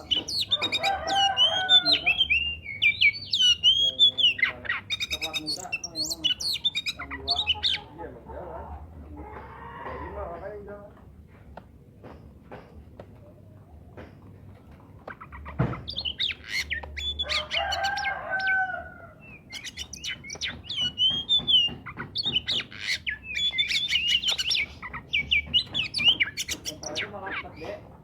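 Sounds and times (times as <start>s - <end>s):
songbird singing: 0.0s - 11.0s, 13.2s - 28.0s.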